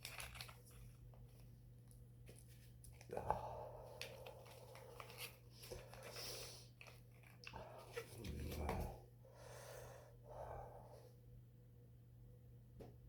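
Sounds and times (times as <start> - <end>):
heavy breathing: 3.1 - 6.7, 7.5 - 11.2.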